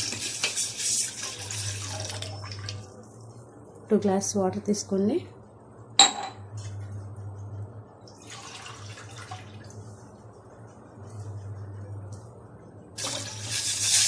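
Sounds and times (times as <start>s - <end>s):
water pouring into a pot: 0.6s - 2.9s, 8.2s - 9.8s, 13.0s - 14.0s
glass clinking: 6.0s - 6.5s.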